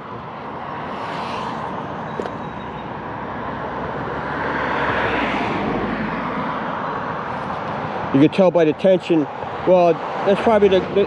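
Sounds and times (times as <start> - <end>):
vehicle passing: 0.0 - 6.4
road traffic noise: 0.0 - 11.0.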